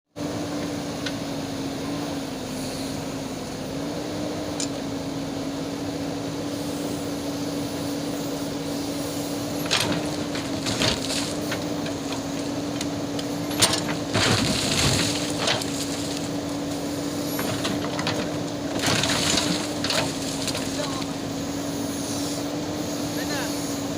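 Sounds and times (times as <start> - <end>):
diesel engine running: 0.2 - 23.9
sharp knocks and clattering: 9.6 - 16.3.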